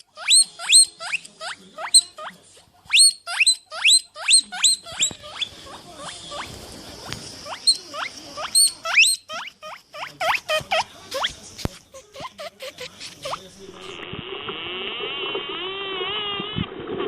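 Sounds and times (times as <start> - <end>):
small animal squeaking: 0.0 - 14.0
rustling: 4.5 - 9.0.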